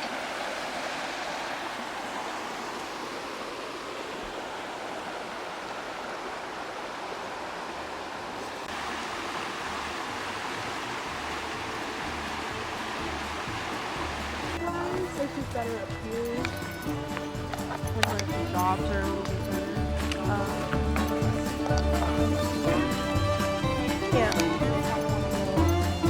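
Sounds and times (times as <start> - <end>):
running water rushing: 0.0 - 26.0.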